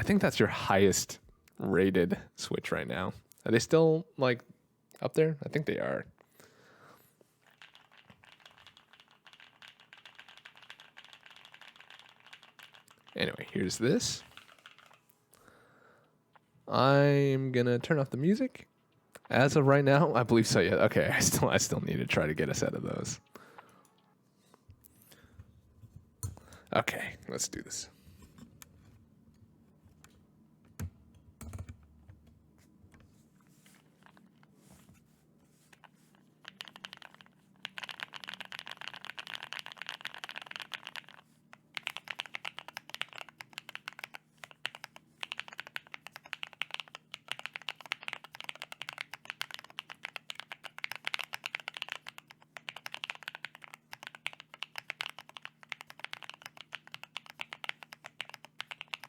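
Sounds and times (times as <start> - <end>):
typing on mechanical keyboard: 7.4 - 15.1, 35.7 - 59.0.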